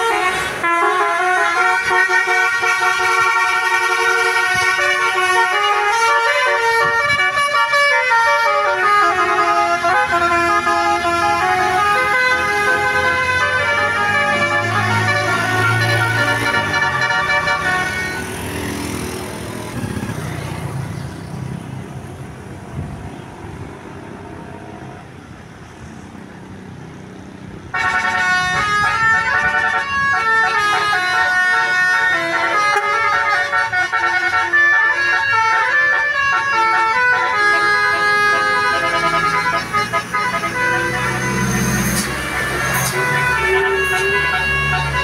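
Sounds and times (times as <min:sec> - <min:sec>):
musical air horn: 0:00.0 - 0:18.5, 0:27.7 - 0:45.0
vehicle noise: 0:00.0 - 0:45.0.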